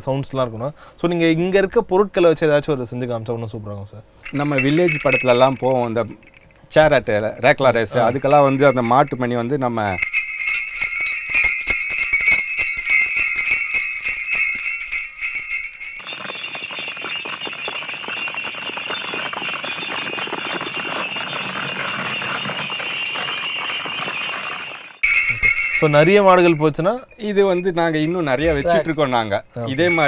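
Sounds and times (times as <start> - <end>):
cattle bells jingling: 4.2 - 16.0, 25.0 - 30.0.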